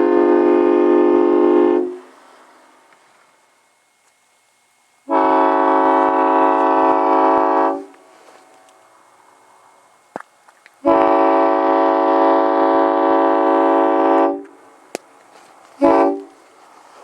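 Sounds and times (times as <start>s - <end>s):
train horn chord blast: 0.0s - 2.2s, 5.1s - 8.7s, 10.8s - 14.6s, 15.8s - 16.4s
short horn toot: 15.8s - 16.4s.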